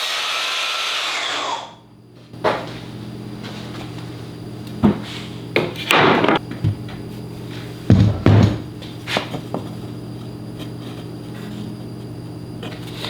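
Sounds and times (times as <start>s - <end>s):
heavy thump on workbench: 7.9s - 8.7s.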